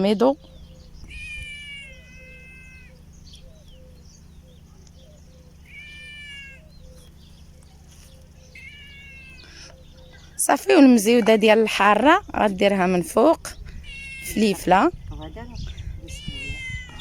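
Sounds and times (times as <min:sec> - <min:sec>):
cat meowing: 0:01.0 - 0:03.0, 0:05.6 - 0:06.8, 0:08.5 - 0:09.8, 0:13.7 - 0:14.9, 0:16.0 - 0:17.0.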